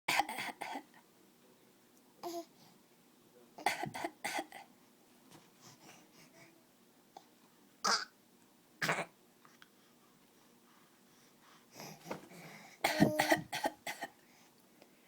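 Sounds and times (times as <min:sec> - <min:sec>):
baby coughing: 0:00.1 - 0:00.9, 0:03.6 - 0:04.7, 0:07.8 - 0:08.1, 0:08.8 - 0:09.2, 0:12.8 - 0:14.2
baby vocal sounds: 0:12.9 - 0:13.5.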